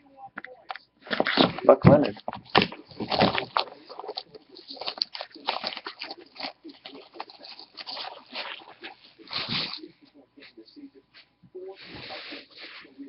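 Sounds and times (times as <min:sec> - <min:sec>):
packaging crinkling and rustling: 0:01.0 - 0:09.9.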